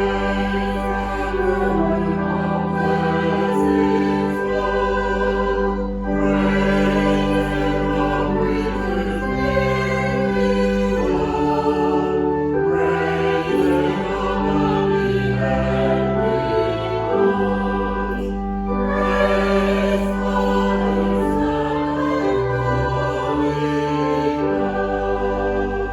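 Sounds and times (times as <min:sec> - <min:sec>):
choir singing long chords: 0:00.0 - 0:25.9
instrumental accompaniment: 0:00.0 - 0:25.9.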